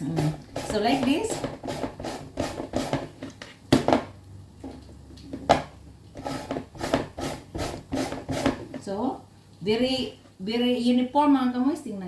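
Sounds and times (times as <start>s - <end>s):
grater rasping strokes: 0.0s - 3.0s, 6.2s - 8.6s.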